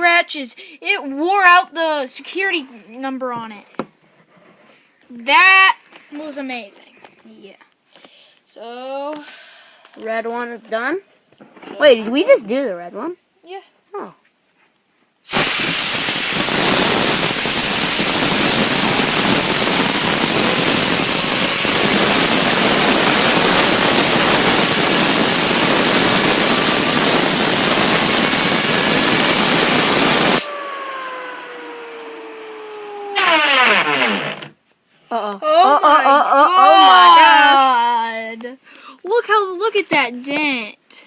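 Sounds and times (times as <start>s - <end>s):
compressed air hissing: 15.2s - 34.6s
fidget spinner whirring: 16.4s - 34.6s.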